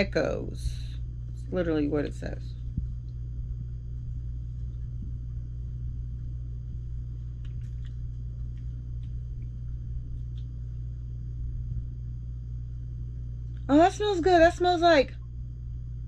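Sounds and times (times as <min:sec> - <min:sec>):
low electrical hum: 0:00.0 - 0:16.0
faint small clicks and taps: 0:07.2 - 0:10.9.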